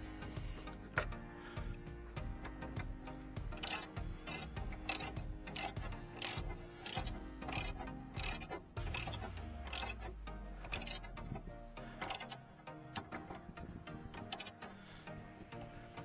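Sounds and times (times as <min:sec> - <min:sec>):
faint background music: 0:00.0 - 0:16.0
socket ratchet clicking: 0:01.7 - 0:11.2, 0:12.0 - 0:12.4, 0:13.0 - 0:13.4, 0:14.2 - 0:14.7.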